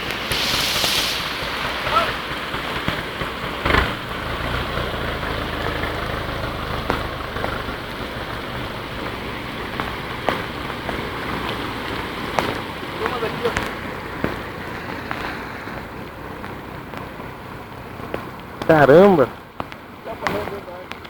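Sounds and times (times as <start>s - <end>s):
low rumble: 0.0s - 12.9s
heavy rain pouring: 0.0s - 21.0s
raindrops clicking close by: 0.0s - 21.0s.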